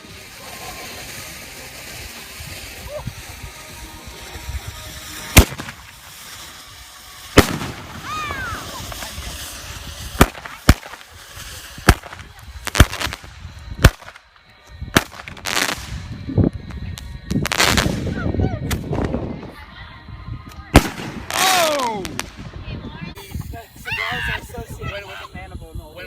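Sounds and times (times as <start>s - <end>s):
fireworks hissing and crackling: 0.0s - 26.0s
fireworks bangs: 4.7s - 14.2s, 23.2s - 26.0s.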